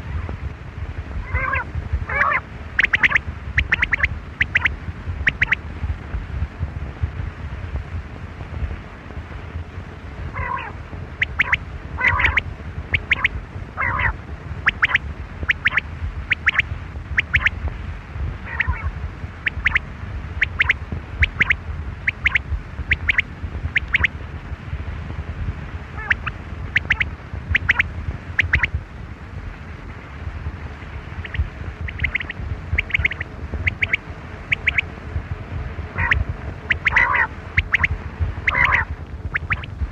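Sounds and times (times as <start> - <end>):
steady low rumble: 0.0 - 39.9
quail calling: 1.2 - 4.7, 5.3 - 5.6, 10.4 - 17.6, 18.4 - 19.8, 20.4 - 24.1, 26.0 - 27.8, 28.4 - 28.7, 31.2 - 34.9, 36.0 - 39.7.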